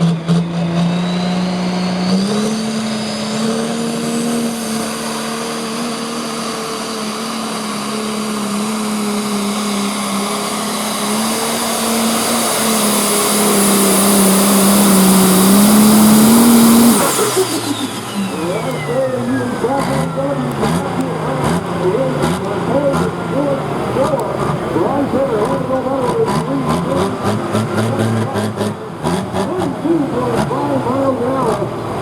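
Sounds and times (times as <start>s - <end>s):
diesel tractor engine at full throttle: 0.0s - 32.0s
high turbo whistle: 0.5s - 21.0s.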